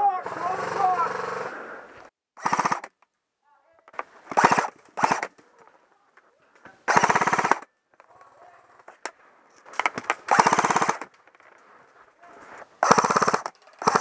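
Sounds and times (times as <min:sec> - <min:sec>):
airsoft gun full-auto bursts: 0:00.2 - 0:01.6, 0:02.4 - 0:03.0, 0:04.3 - 0:05.3, 0:06.9 - 0:07.7, 0:10.3 - 0:11.1, 0:12.8 - 0:14.0.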